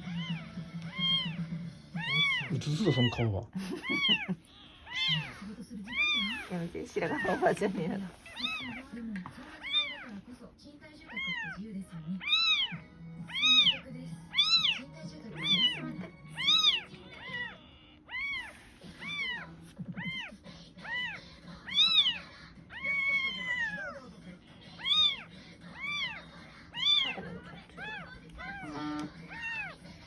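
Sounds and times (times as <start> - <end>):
kitten meowing: 0.0 - 8.9, 9.5 - 10.2, 11.1 - 11.6, 12.2 - 24.0, 24.8 - 29.9.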